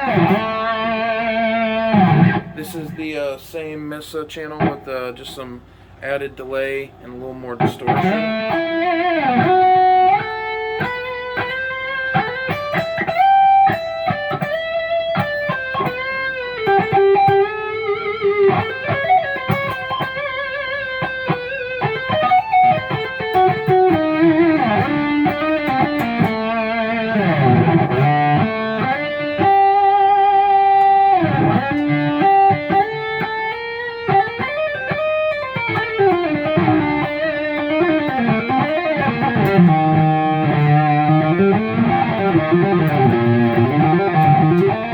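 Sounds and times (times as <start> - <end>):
distorted electric guitar lead: 0.0 - 3.0, 7.6 - 44.9.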